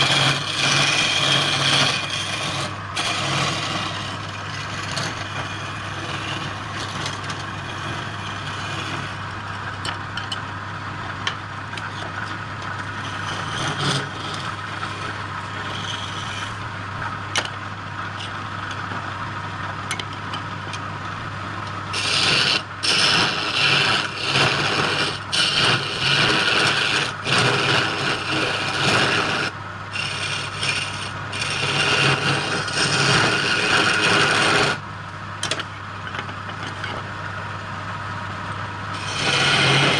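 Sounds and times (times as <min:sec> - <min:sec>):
tool scraping spinning wood: 0:00.0 - 0:09.8, 0:11.6 - 0:17.5, 0:21.8 - 0:34.9, 0:38.9 - 0:39.9
wood lathe humming: 0:00.0 - 0:09.8, 0:12.6 - 0:16.8, 0:21.9 - 0:34.8, 0:38.9 - 0:39.9.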